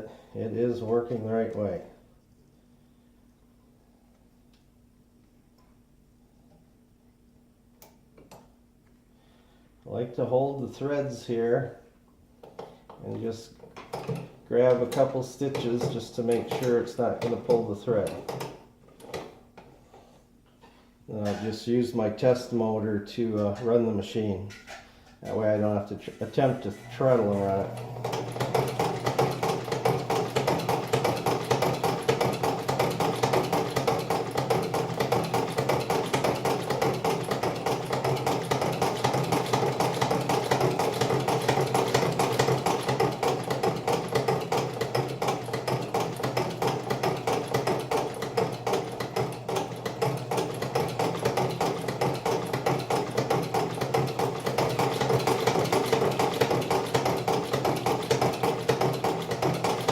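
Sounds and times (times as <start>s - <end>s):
electric motor hum: 26.6s - 59.9s
sewing machine needle clatter: 28.0s - 59.9s.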